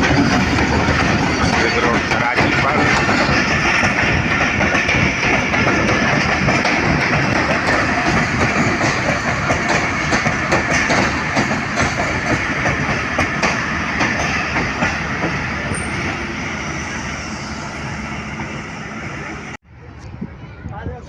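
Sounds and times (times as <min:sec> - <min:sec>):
train wheels clattering over rail joints: 0:00.0 - 0:16.2.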